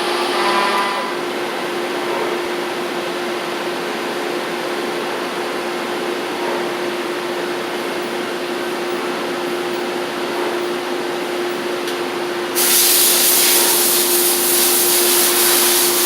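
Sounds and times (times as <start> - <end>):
milling machine hiss and whine: 12.3 - 16.0.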